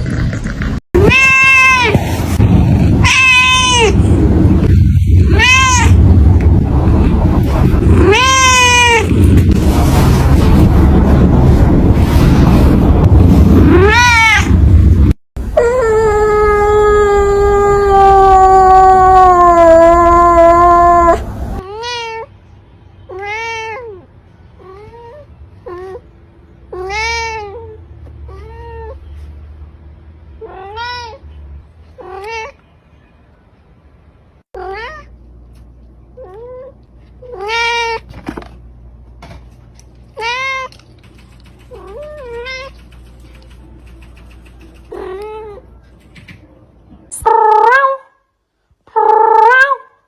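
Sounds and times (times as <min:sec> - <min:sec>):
cat meowing: 0:01.0 - 0:02.0, 0:03.0 - 0:04.0, 0:05.2 - 0:06.0, 0:07.9 - 0:09.2, 0:36.2 - 0:38.1.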